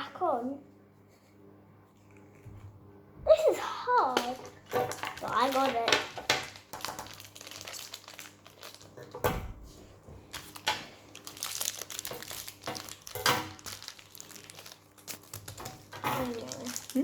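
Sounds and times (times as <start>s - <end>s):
plastic packaging crinkling: 3.9s - 9.3s, 10.2s - 17.0s.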